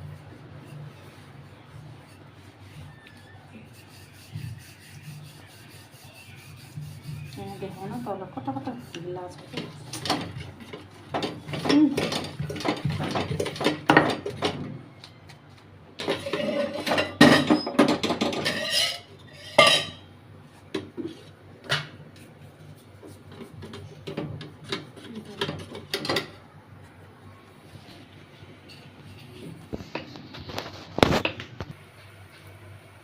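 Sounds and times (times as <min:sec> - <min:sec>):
utensils and dishes clattering: 0:09.3 - 0:14.7, 0:16.0 - 0:20.1, 0:23.3 - 0:26.4.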